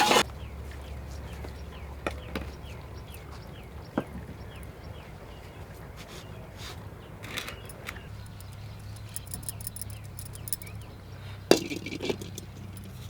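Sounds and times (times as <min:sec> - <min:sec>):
utensils clinking: 0:07.2 - 0:13.0.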